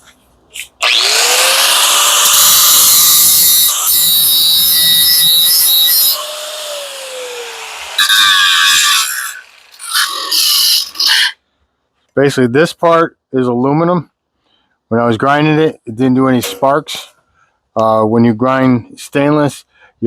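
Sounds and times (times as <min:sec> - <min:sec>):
angle grinder grinding metal: 0:00.6 - 0:11.2.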